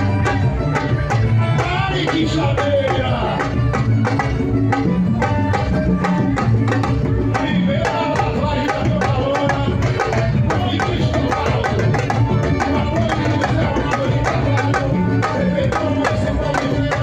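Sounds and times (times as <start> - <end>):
hand-drum percussion: 0.0 - 17.0.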